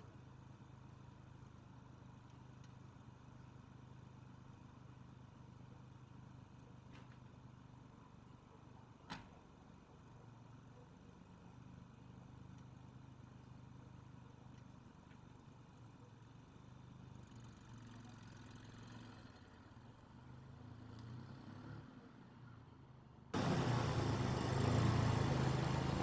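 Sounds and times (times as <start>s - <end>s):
vehicle engine idling: 23.4s - 26.0s.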